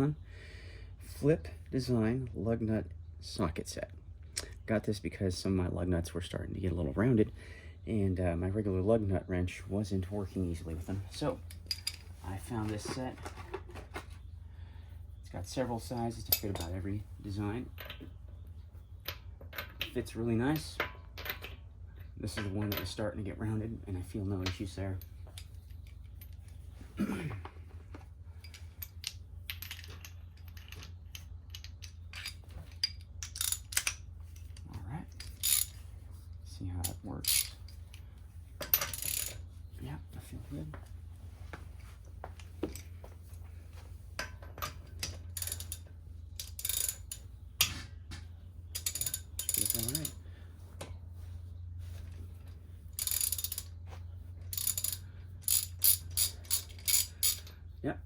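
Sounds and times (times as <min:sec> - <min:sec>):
steady low hum: 0:00.0 - 0:58.0
ratchet wrench clicking: 0:38.7 - 0:39.4, 0:45.3 - 0:45.8, 0:46.4 - 0:47.2, 0:48.8 - 0:50.2, 0:53.0 - 0:53.7, 0:54.5 - 0:57.5.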